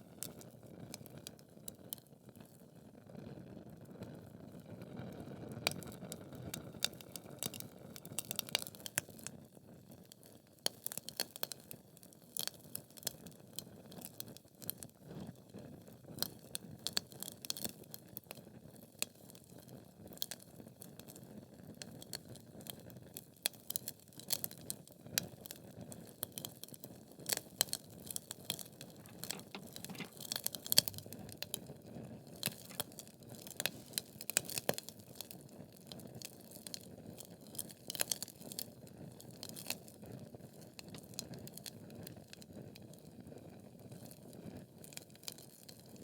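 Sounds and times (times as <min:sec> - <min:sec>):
logs crackling and popping: 0:29.0 - 0:31.4.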